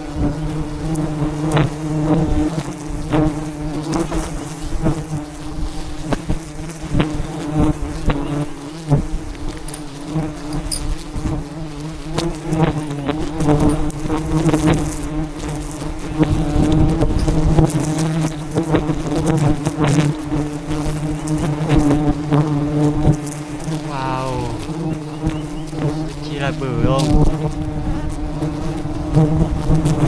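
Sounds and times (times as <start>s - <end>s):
bees buzzing: 23.4s - 27.5s.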